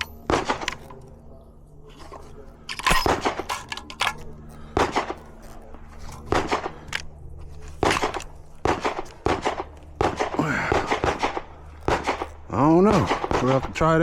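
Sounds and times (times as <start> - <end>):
gunshots with echo: 7.8 - 12.3, 12.9 - 13.7.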